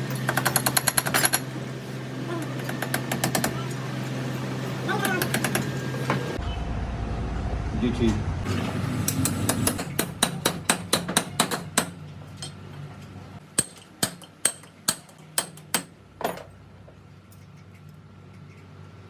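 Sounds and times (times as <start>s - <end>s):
hammer striking metal: 9.1s - 12.6s, 13.5s - 16.4s.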